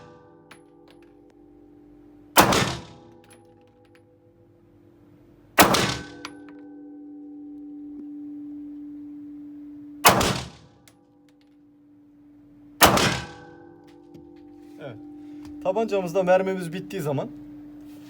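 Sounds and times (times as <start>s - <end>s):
pistol shots: 2.4s - 3.1s, 5.6s - 6.3s, 10.0s - 10.6s, 12.8s - 13.6s.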